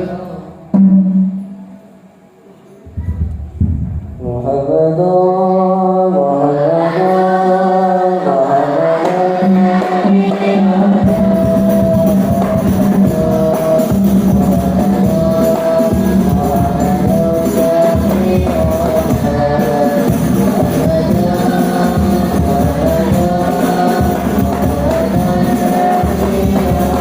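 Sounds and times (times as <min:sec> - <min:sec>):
percussion beat: 0:08.4 - 0:27.0.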